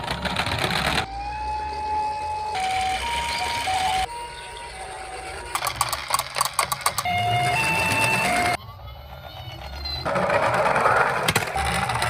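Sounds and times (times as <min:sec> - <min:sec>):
toy two-tone siren: 0:01.0 - 0:10.3, 0:11.3 - 0:12.0
rapid clicks and rattles: 0:05.5 - 0:07.1.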